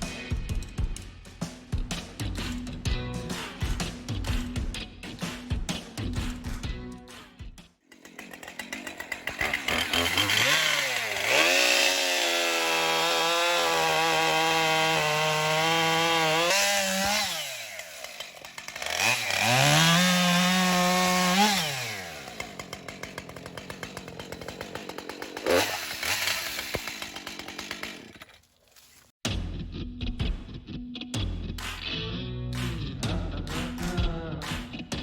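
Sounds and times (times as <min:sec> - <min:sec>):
chainsaw revving and idling: 0:07.9 - 0:28.3.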